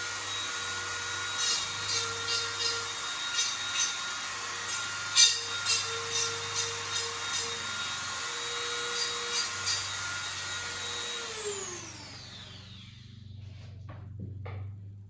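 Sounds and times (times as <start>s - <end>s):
rotary tool whining on metal: 0.0s - 13.4s.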